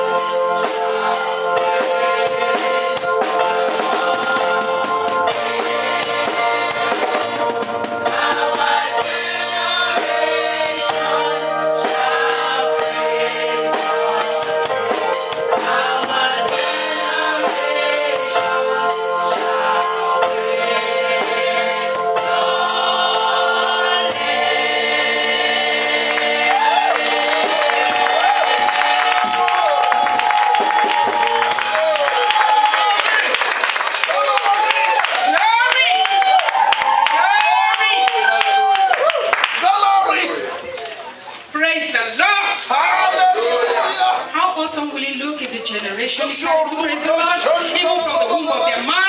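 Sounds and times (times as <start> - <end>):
voices singing together: 0.0 - 32.0
drum kit: 0.0 - 39.6.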